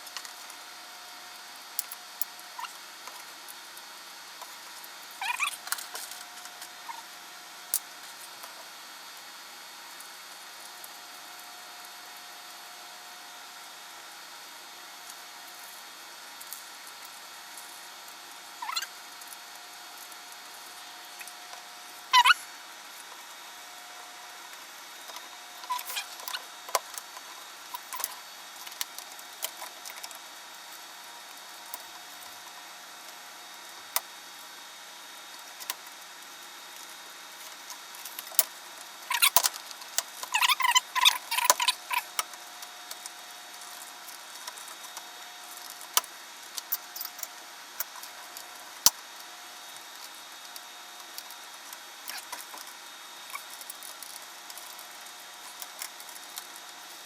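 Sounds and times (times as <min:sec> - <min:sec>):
small hard parts clicking: 0:27.8 - 0:30.1, 0:39.1 - 0:42.4.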